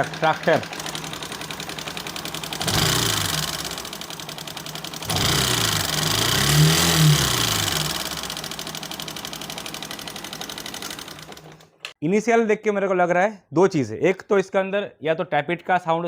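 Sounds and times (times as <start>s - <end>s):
motorcycle engine knocking: 0.0s - 11.6s.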